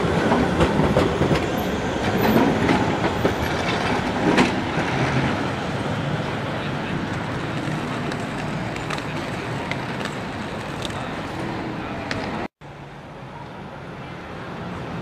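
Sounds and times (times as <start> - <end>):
street traffic noise: 0.0 - 15.0
tram rumbling on track: 0.0 - 15.0.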